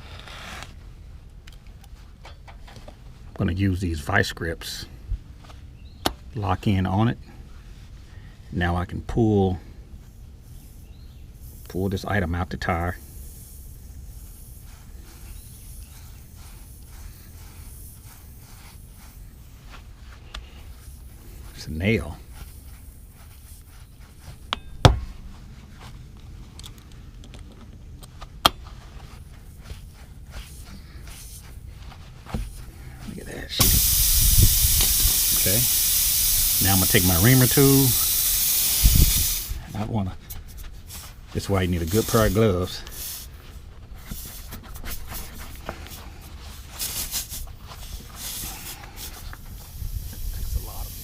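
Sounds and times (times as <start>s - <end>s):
tool scraping rubber tire: 0.0s - 0.8s, 38.9s - 50.9s.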